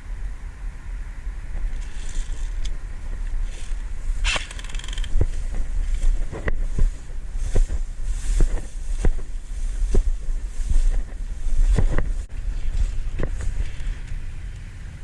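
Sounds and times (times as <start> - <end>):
wind buffeting microphone: 1.4 - 15.0.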